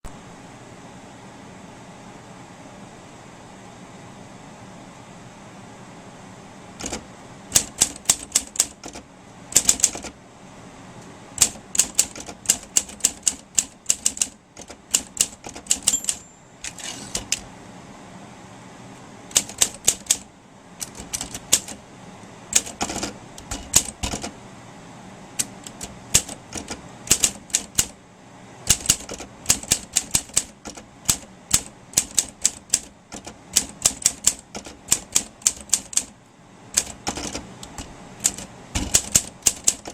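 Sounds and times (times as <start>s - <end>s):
manual typewriter clacking: 6.8s - 10.2s, 11.4s - 16.3s, 19.3s - 21.8s, 22.5s - 24.3s, 25.4s - 28.0s, 28.7s - 36.1s, 36.7s - 39.9s.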